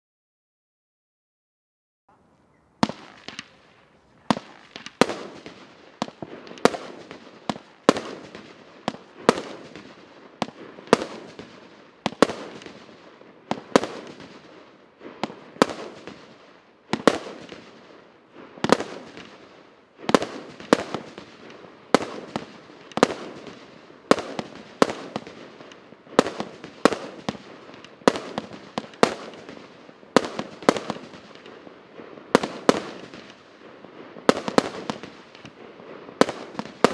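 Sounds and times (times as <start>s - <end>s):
firework battery bangs: 2.8s - 11.5s.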